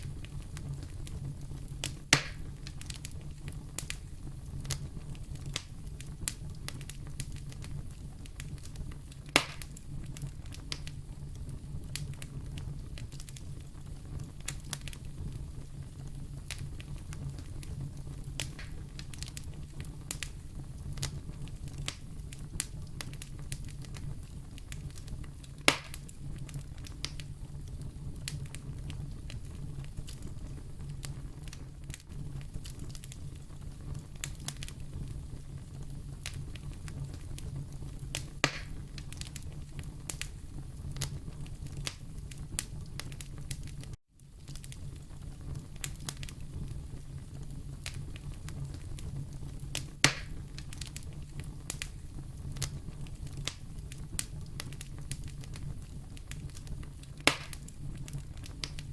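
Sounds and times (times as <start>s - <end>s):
loud fire pops: 0.0s - 58.9s
wood fire crackling: 0.0s - 58.9s.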